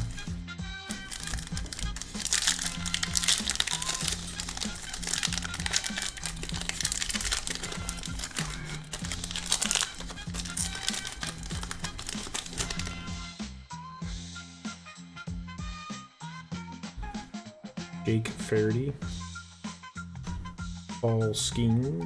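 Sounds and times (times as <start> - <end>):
foil wrappers crinkling and tearing: 0.0 - 13.2.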